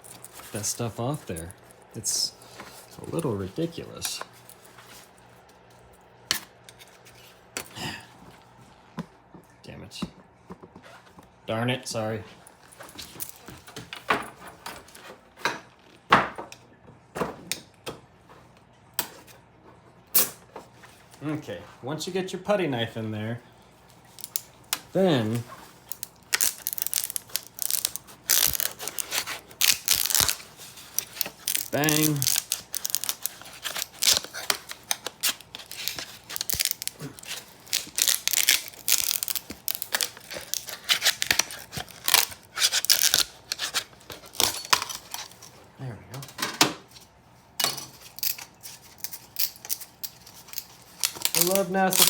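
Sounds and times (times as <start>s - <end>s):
plastic chain mail crackling: 24.1s - 45.6s, 48.1s - 52.0s.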